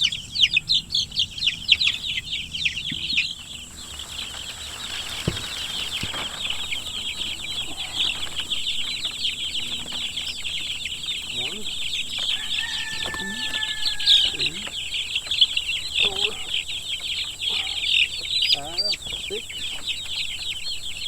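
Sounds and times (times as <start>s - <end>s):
chicks peeping: 0.0s - 21.0s
dull knocks: 4.9s - 10.6s.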